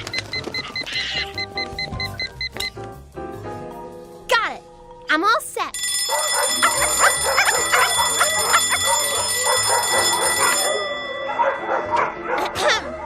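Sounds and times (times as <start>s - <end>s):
bell ringing: 5.7s - 12.4s.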